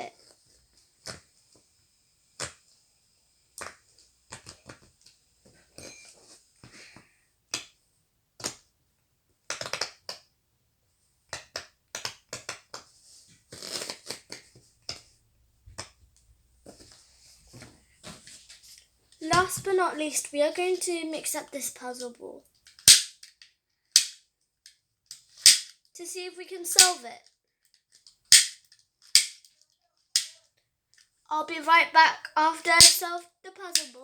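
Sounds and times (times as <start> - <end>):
fidget toy bubbles popping: 32.7 - 34.0.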